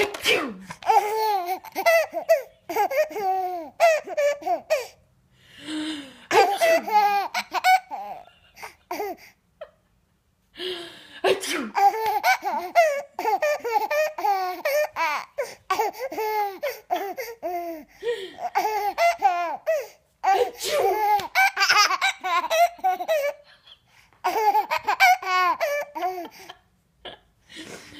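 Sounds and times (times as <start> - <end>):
baby giggling: 0.8 - 5.0, 6.3 - 9.8, 11.7 - 27.3.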